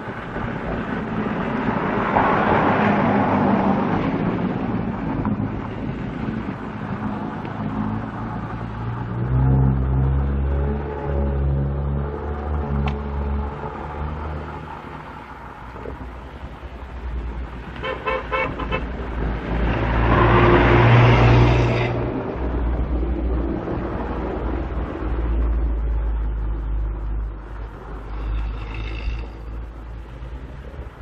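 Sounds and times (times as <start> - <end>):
traffic rumble: 0.0 - 31.0.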